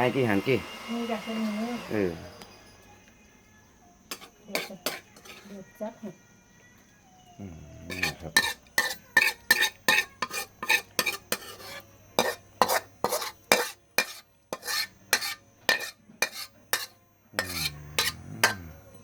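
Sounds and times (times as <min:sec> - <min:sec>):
metal spoon stirring pot: 0:04.1 - 0:05.6, 0:07.9 - 0:18.6.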